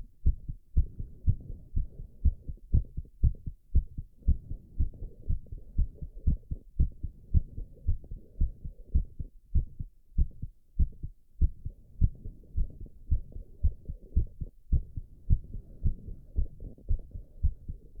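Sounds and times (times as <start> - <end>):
heartbeat double thumps: 0.0 - 18.0.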